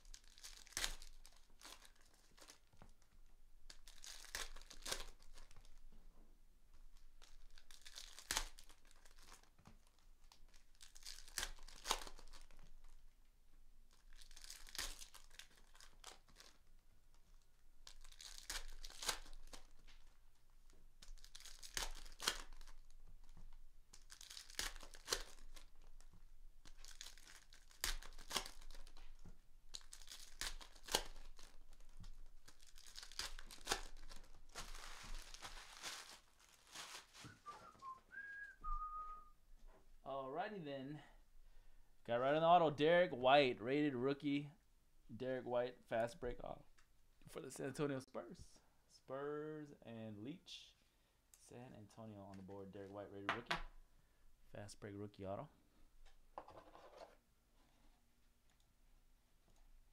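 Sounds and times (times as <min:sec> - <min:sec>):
card packs being torn open: 0:00.0 - 0:02.6, 0:03.7 - 0:05.8, 0:07.2 - 0:09.5, 0:10.3 - 0:13.0, 0:13.9 - 0:16.6, 0:17.8 - 0:20.1, 0:21.0 - 0:23.0, 0:23.9 - 0:37.3
plastic wrappers crinkling: 0:00.0 - 0:05.9, 0:06.7 - 0:13.1, 0:13.9 - 0:38.3.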